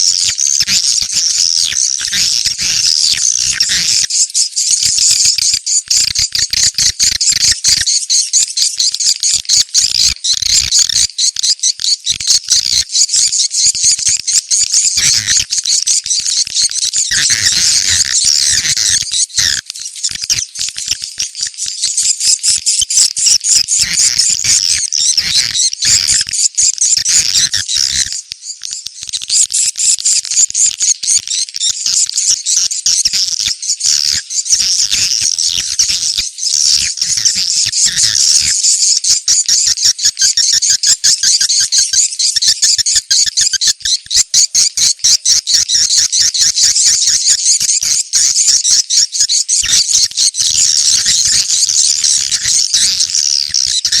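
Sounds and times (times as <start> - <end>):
rapid high-pitched bird chirps: 0.0 - 54.0.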